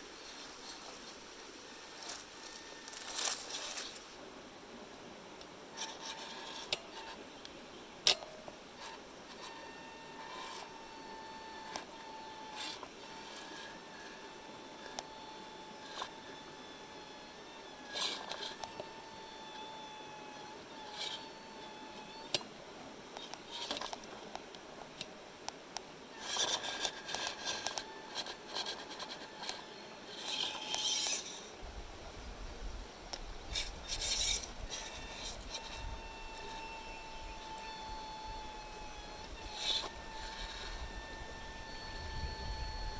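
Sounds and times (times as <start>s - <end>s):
electric motor whine: 0.0s - 7.4s, 8.1s - 42.9s
scraping and rubbing: 2.0s - 4.2s, 26.2s - 31.6s, 33.5s - 36.7s.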